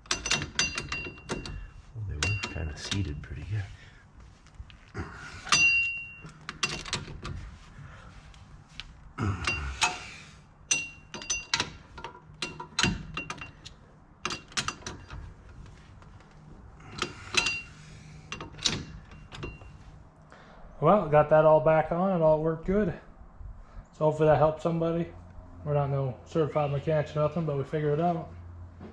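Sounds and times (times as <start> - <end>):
metallic clinks of hand tools: 0.0 - 3.3, 5.4 - 7.1, 9.4 - 15.4, 16.8 - 19.8.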